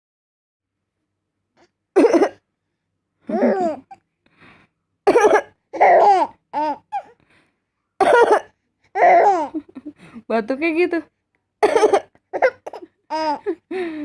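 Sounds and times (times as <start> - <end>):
person coughing: 2.0 - 2.4, 5.1 - 5.5, 8.0 - 8.5, 11.6 - 12.8
baby laughing and squealing: 5.8 - 7.1, 9.0 - 9.7, 11.9 - 13.5.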